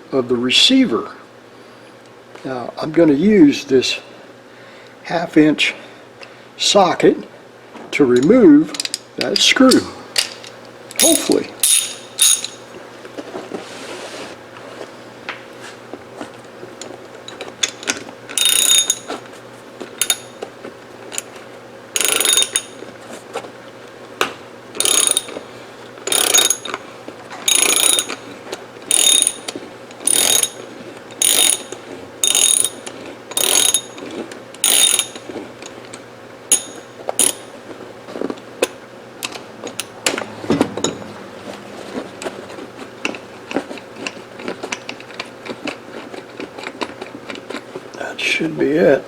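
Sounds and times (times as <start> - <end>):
socket ratchet clicking: 10.2 - 12.6, 17.6 - 19.2, 20.0 - 20.3, 22.0 - 22.8, 24.8 - 25.4, 26.1 - 26.8, 27.5 - 28.2, 28.9 - 30.6, 31.2 - 33.9, 34.6 - 35.2, 36.5 - 37.5.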